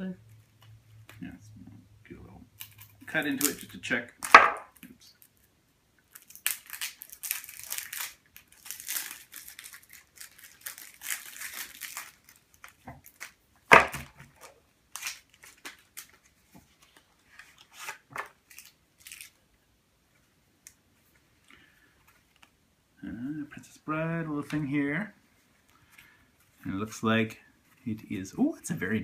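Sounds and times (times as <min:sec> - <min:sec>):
packaging crinkling and tearing: 0:06.1 - 0:19.5.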